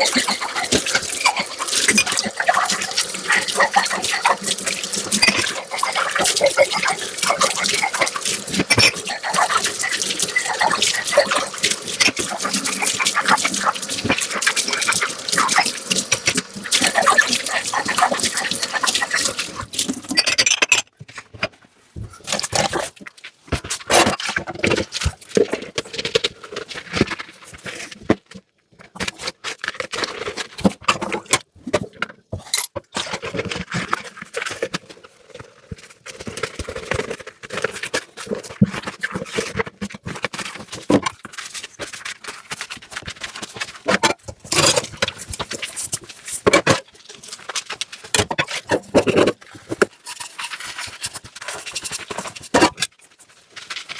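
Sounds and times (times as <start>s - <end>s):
tap water running: 0.0s - 20.3s, 44.0s - 46.6s
scrubbing dishes: 0.0s - 20.8s, 43.8s - 47.4s.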